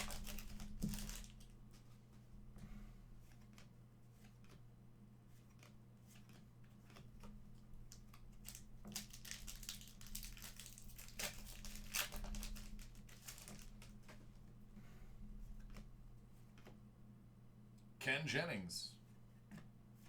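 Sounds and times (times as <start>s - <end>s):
foil wrapper tearing and crinkling: 0.0s - 1.6s, 7.9s - 14.1s.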